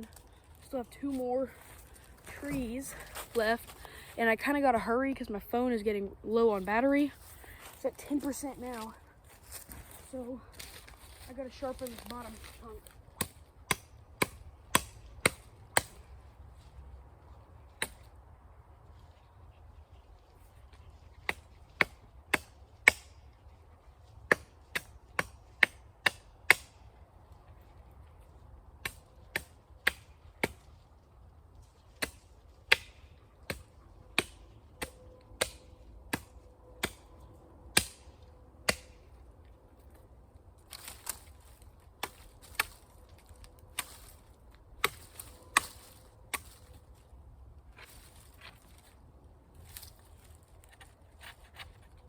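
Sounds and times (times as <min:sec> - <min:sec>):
blade chopping wooden pole: 0:13.2 - 0:16.0, 0:37.8 - 0:38.1.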